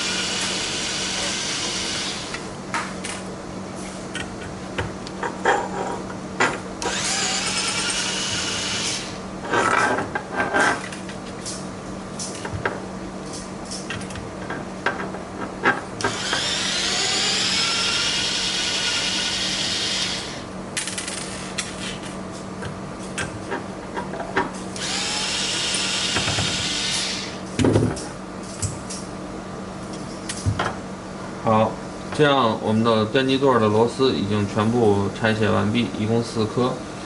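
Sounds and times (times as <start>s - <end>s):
electric screwdriver whining: 6.8s - 9.2s, 16.0s - 20.4s, 24.8s - 27.4s.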